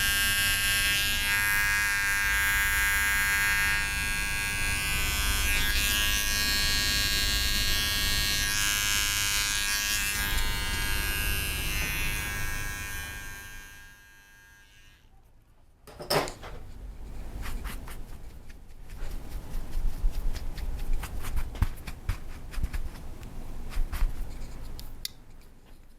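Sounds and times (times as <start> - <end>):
electric hair clippers buzzing: 0.0 - 15.0.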